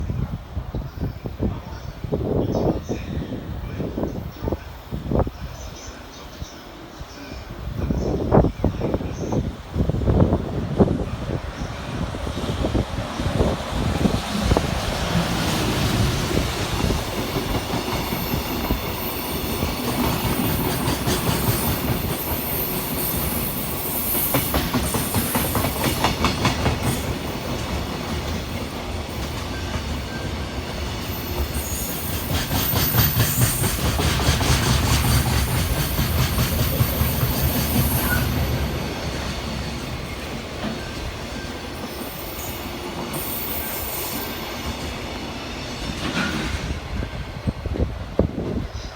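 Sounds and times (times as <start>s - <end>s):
train rumble: 0.0s - 48.9s
train wheels clattering over rail joints: 24.0s - 38.4s.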